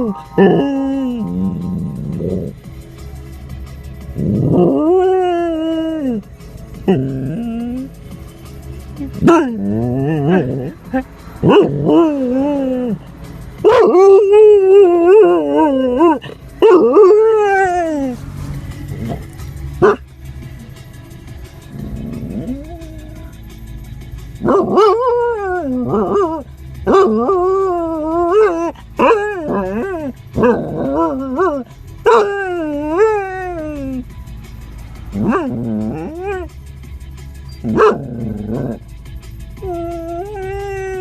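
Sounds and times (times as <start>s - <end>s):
dog howling: 0.0s - 2.6s, 4.3s - 6.2s, 9.1s - 13.0s, 13.6s - 18.2s, 21.7s - 23.3s, 24.4s - 34.0s, 35.1s - 36.5s, 37.6s - 38.8s, 39.6s - 41.0s.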